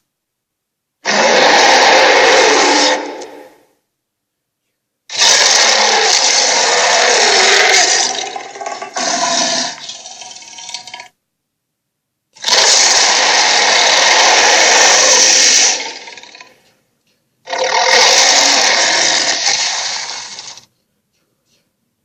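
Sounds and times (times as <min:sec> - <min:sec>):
harsh creature calls: 0:01.0 - 0:03.7, 0:05.1 - 0:11.0, 0:12.4 - 0:16.6, 0:17.5 - 0:20.7.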